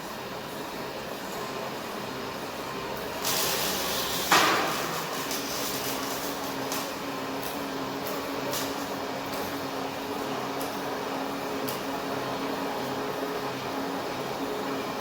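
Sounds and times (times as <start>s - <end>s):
workshop machinery hum: 0.0s - 15.0s
hiss: 3.2s - 6.3s.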